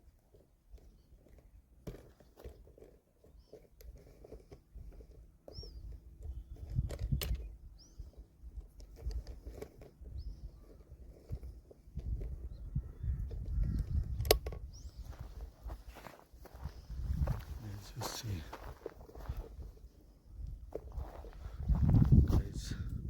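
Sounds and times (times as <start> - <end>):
high bird chirps: 5.5 - 5.9
footsteps crunching on dry ground: 14.8 - 22.9.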